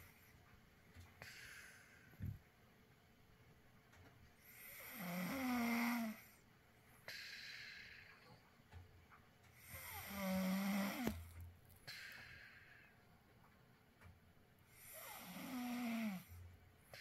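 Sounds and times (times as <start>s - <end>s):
soft breathing: 0.0s - 2.5s, 5.8s - 13.8s
person snoring: 4.6s - 6.2s, 9.6s - 11.2s, 14.8s - 16.3s.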